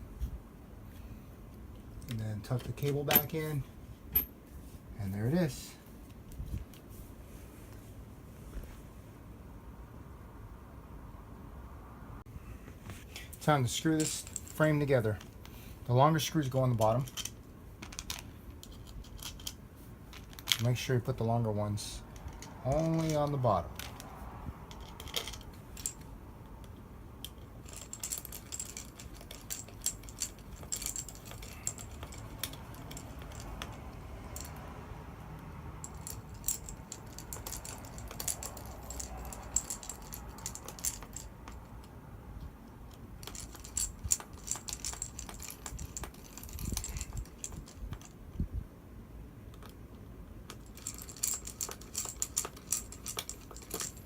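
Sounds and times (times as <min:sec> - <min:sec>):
screws and screwdriver clinking: 0:02.0 - 0:04.3, 0:13.2 - 0:15.4, 0:22.1 - 0:24.1, 0:24.7 - 0:26.1, 0:27.2 - 0:34.6, 0:35.8 - 0:41.9, 0:42.9 - 0:48.2, 0:50.5 - 0:54.0.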